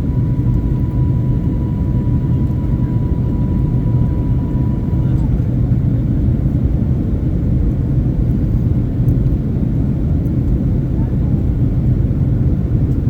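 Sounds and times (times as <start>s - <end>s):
airliner low rumble: 0.0s - 13.0s.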